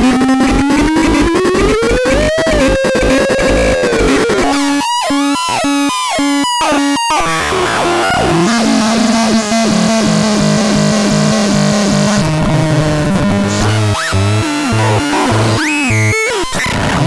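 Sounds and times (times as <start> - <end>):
buzzy stuttering tone: 0.0 - 4.7, 13.5 - 16.5.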